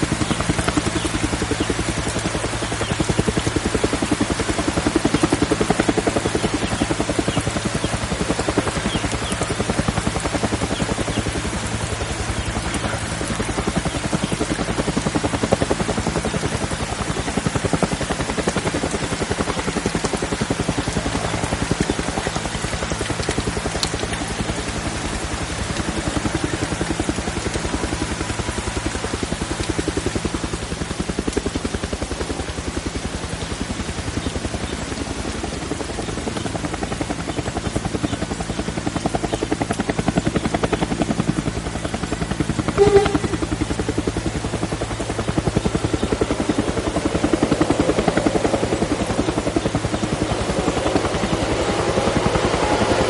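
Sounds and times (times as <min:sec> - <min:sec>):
heavy rain falling: 0:00.0 - 0:38.9
low hum: 0:42.7 - 0:44.0.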